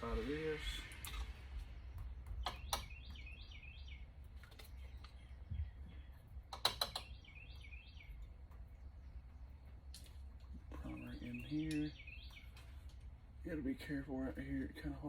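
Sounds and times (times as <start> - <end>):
bird chirping: 0.0 - 13.2
steady low hum: 0.0 - 15.0
sharp clicks and taps: 6.5 - 7.2.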